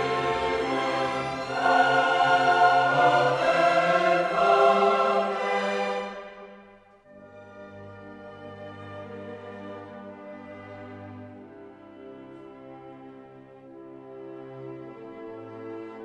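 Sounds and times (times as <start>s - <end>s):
choir singing with orchestra: 0.0s - 6.9s.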